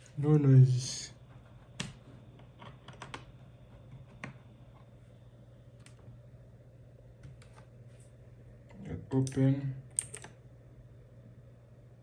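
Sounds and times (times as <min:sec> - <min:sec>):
faint low hum: 0:00.0 - 0:12.0
computer keys clicking: 0:09.2 - 0:10.4.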